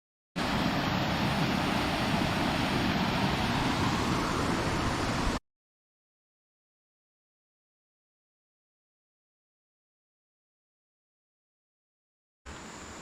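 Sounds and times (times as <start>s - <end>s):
flowing water rushing: 0.4s - 5.4s.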